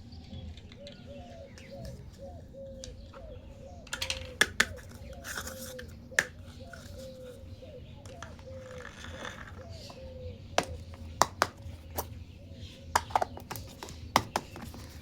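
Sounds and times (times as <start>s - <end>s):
plastic toy clicks and taps: 3.9s - 5.0s, 10.6s - 12.1s.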